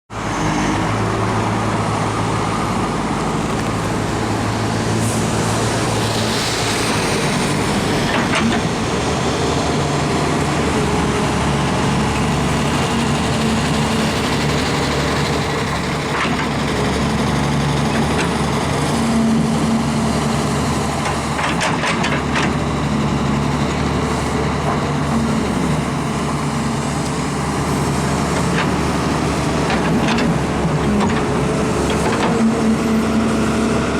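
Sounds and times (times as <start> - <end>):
diesel engine running: 0.2 - 33.9
sharp clicks and knocks: 21.0 - 22.6.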